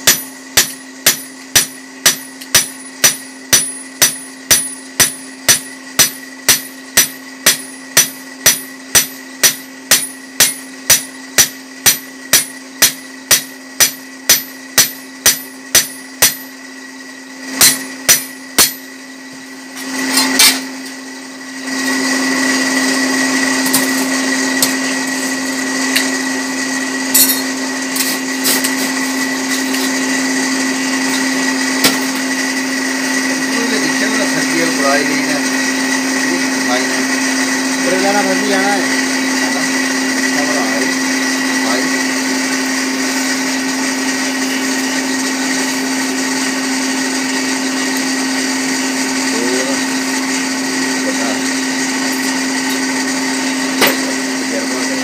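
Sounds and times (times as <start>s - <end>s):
hammer ringing on anvil: 0.0s - 16.6s, 17.6s - 19.0s, 27.1s - 27.6s
loud steady whir: 0.0s - 55.0s
electric blower hum: 16.6s - 55.0s.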